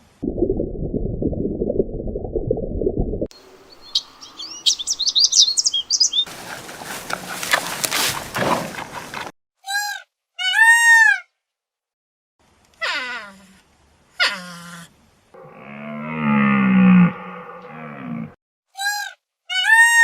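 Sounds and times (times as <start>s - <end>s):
low rumbling noise: 0.0s - 5.0s
high bird chirps: 3.4s - 6.3s
short arching animal calls: 3.4s - 6.3s.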